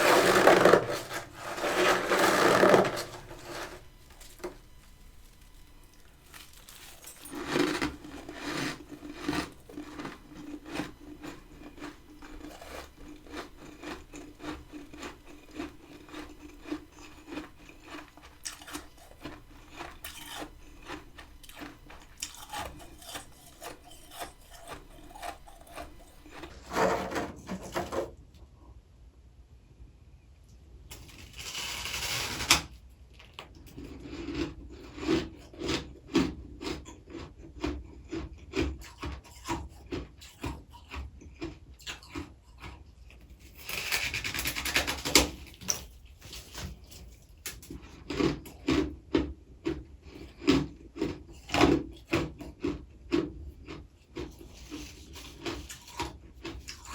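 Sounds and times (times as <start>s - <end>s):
crisp crackles of frost: 0.0s - 26.6s
frost being scraped: 0.0s - 28.1s.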